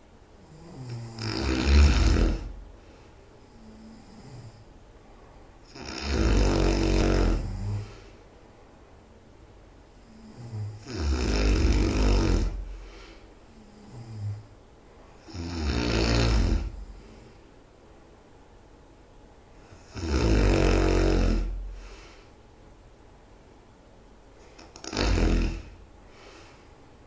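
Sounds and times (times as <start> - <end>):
quiet breathing: 0.0 - 9.2, 9.8 - 18.0, 19.5 - 22.6, 24.3 - 27.0
person snoring loudly: 0.4 - 2.6, 5.7 - 8.1, 10.0 - 14.5, 15.2 - 17.2, 19.7 - 22.0, 24.6 - 25.8.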